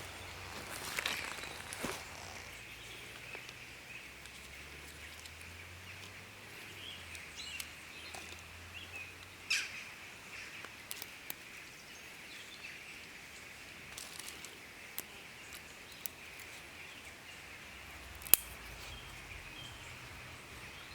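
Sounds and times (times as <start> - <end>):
campfire crackling and popping: 0.0 - 3.6, 17.2 - 20.9.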